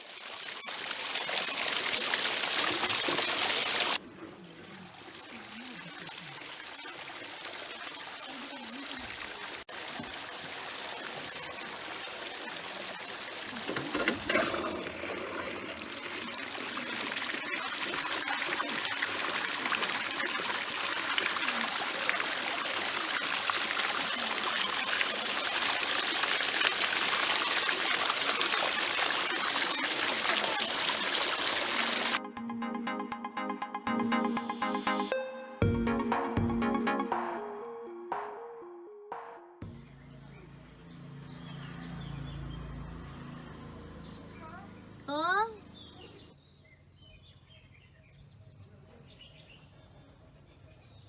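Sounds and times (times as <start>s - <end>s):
rushing water: 0.0s - 32.2s.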